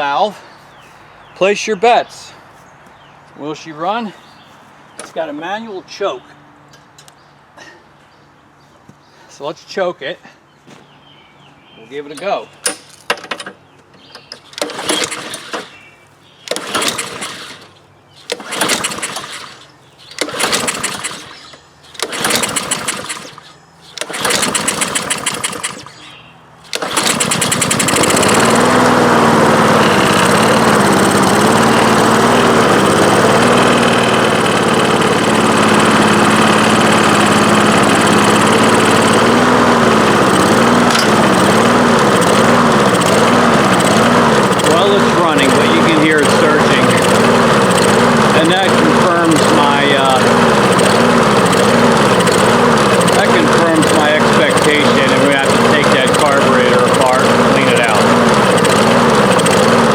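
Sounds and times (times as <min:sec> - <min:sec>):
recoil starter pulls: 0:12.1 - 0:59.9
lawnmower engine running: 0:14.2 - 0:59.9.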